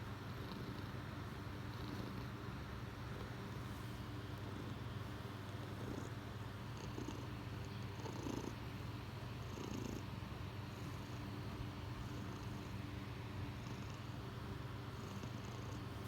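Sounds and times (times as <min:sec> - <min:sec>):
cat purring: 0:00.3 - 0:02.5, 0:05.4 - 0:12.8, 0:13.4 - 0:16.0.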